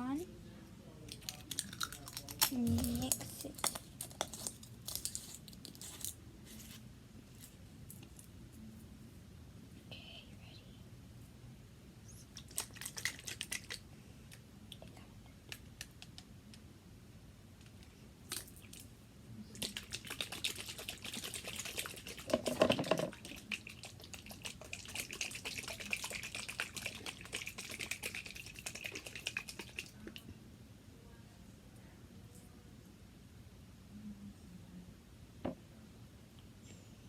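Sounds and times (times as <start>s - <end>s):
plastic container rattling: 22.3s - 23.2s.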